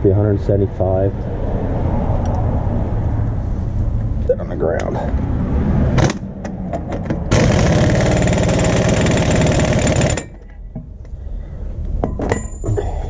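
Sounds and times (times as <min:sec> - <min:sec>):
impact wrench hammering: 0:06.1 - 0:10.9.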